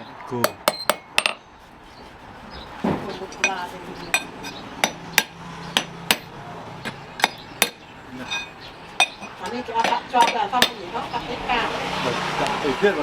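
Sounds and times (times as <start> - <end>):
hammer striking metal: 0.4 - 1.4, 3.4 - 10.8.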